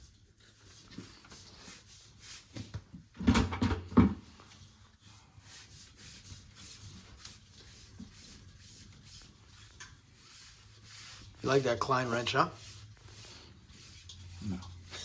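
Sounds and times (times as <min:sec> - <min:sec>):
knocks and clunks of tools: 0:03.2 - 0:04.2.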